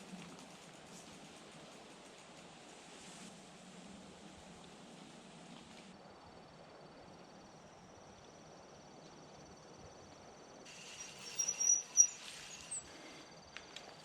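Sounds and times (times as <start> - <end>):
bird chirps: 10.7 - 12.9
insects trilling: 10.7 - 14.0.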